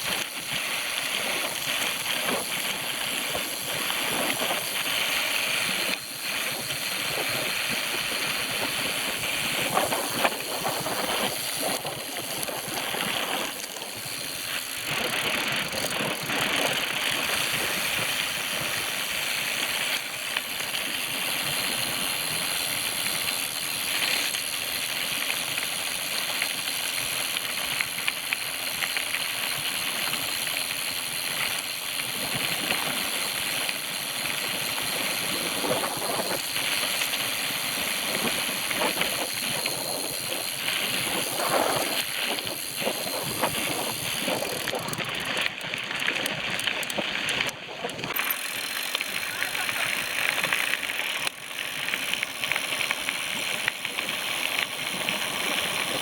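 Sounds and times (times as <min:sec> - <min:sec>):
bicycle rattling and clicks: 0:00.0 - 0:56.0
wind and tyre noise: 0:00.0 - 0:56.0.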